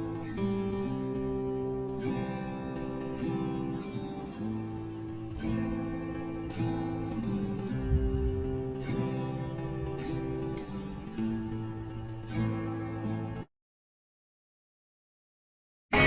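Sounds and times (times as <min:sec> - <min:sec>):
strummed acoustic guitar chords: 0:00.0 - 0:13.5.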